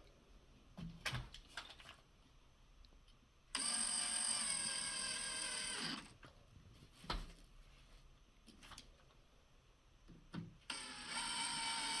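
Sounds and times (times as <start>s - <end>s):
small electric motor whine: 3.6s - 6.1s, 10.7s - 12.0s.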